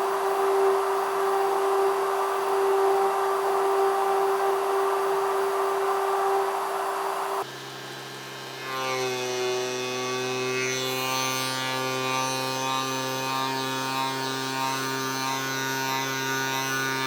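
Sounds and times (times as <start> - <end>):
music with sustained tones: 0.0 - 7.5.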